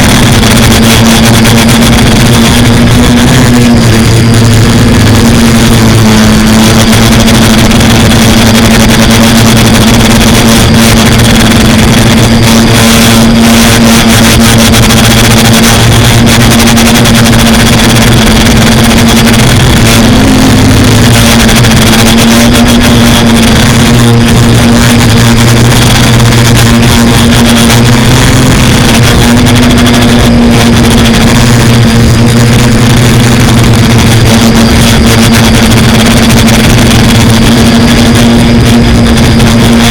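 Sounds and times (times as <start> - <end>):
drone propellers buzzing: 0.0 - 39.9.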